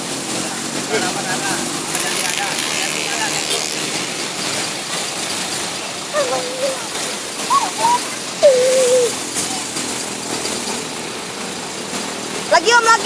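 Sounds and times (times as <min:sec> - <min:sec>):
roadside traffic noise: 0:00.0 - 0:13.0
short wavering cries: 0:06.0 - 0:09.8.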